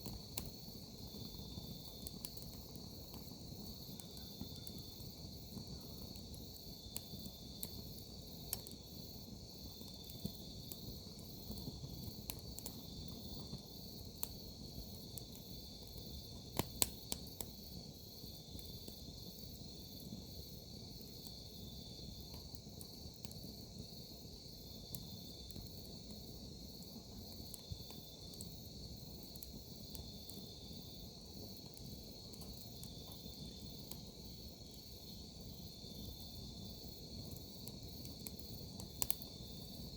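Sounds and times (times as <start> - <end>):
campfire crackling and popping: 0.0 - 39.9
crickets chirping: 0.0 - 39.9.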